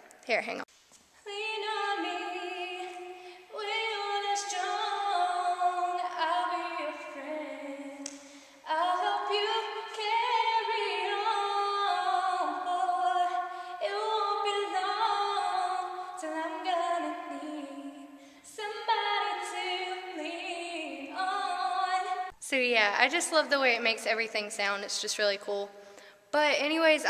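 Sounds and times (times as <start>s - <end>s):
woman singing unaccompanied: 1.3s - 22.3s.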